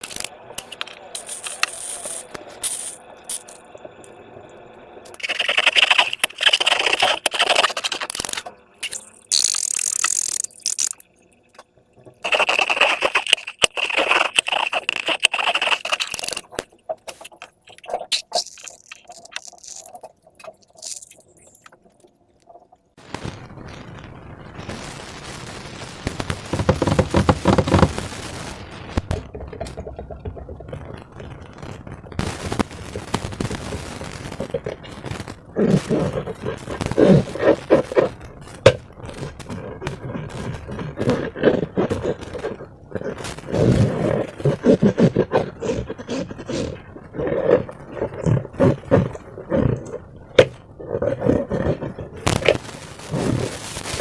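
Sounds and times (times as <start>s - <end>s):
rubbing with sharp clicks: 5.1s - 11.1s, 12.2s - 21.8s, 26.5s - 28.1s.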